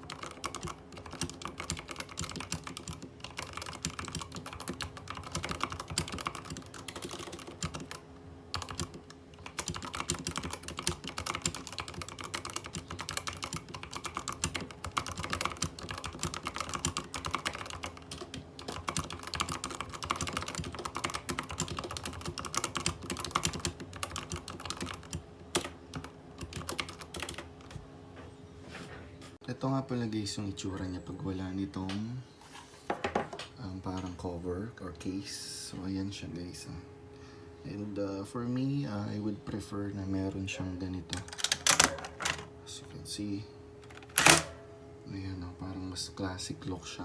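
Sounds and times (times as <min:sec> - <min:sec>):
mechanical keyboard typing: 0:00.0 - 0:27.5, 0:41.1 - 0:42.5, 0:43.9 - 0:44.5.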